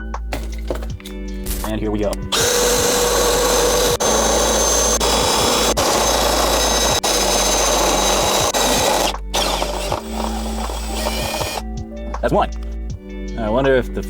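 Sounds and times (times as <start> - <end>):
cordless drill boring: 2.3 - 11.6.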